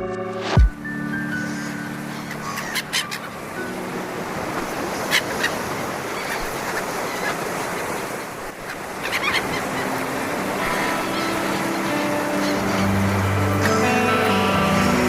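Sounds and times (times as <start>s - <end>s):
music: 0.0s - 4.3s, 9.4s - 15.0s
sea surf washing: 0.0s - 15.0s.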